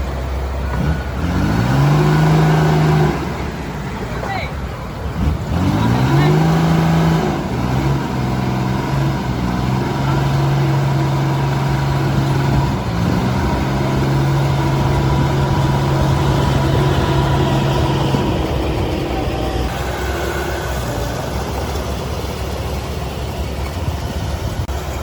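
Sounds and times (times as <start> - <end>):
diesel engine running: 0.0 - 25.0.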